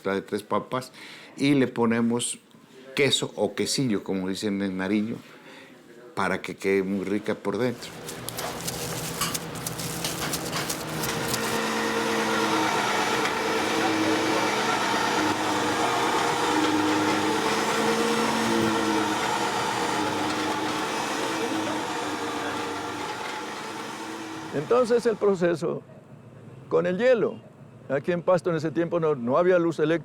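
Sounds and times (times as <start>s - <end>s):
small motor running: 7.8s - 25.4s.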